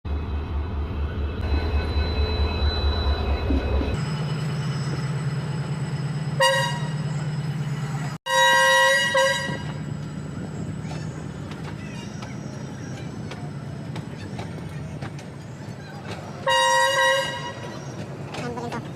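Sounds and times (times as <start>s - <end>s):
machine horn blasts: 6.4s - 7.0s, 8.3s - 9.7s.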